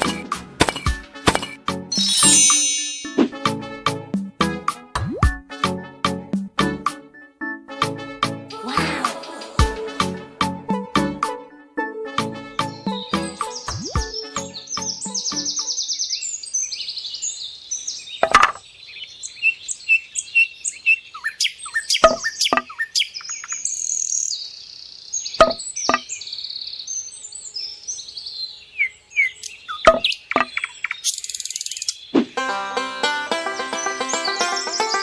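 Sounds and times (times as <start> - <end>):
sharp taps or clicks: 0.0 - 1.6
songbirds chirping and trilling: 0.0 - 3.2, 12.5 - 32.4, 33.3 - 35.0
music: 0.0 - 15.7, 32.4 - 35.0.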